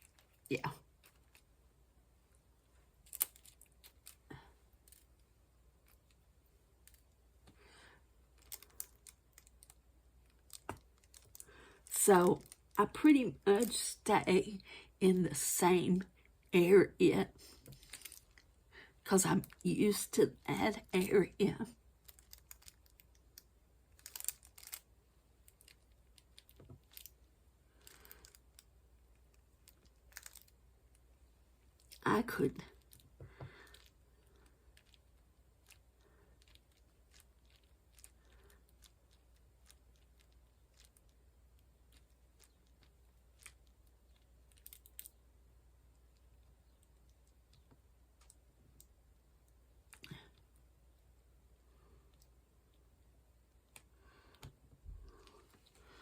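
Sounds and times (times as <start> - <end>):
soft rustle: 17.3 - 18.6.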